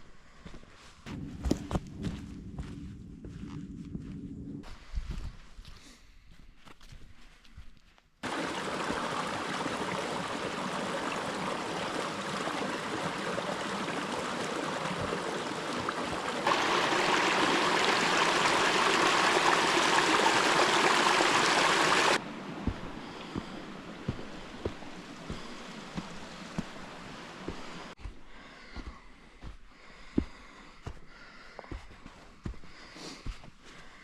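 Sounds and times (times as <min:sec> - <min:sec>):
stream water rushing: 0:08.2 - 0:28.0.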